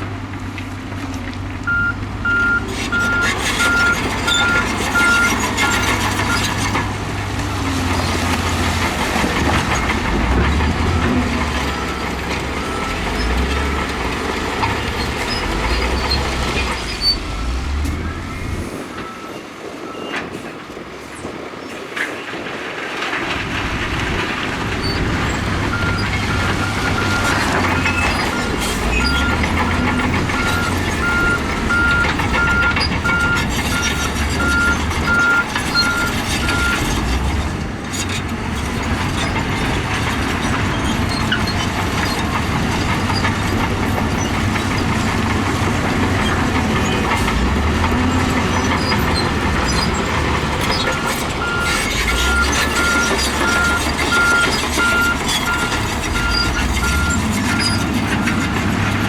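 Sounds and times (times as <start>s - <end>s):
heavy diesel machinery running: 0.0s - 21.6s, 22.3s - 59.0s
reversing alarm beeping: 1.7s - 6.4s, 25.7s - 36.8s, 50.9s - 57.8s.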